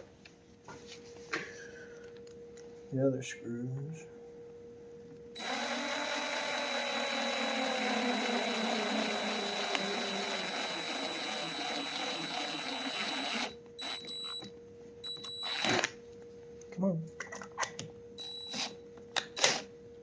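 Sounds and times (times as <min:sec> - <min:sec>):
electric drill whining: 0:05.4 - 0:14.5, 0:15.1 - 0:15.9.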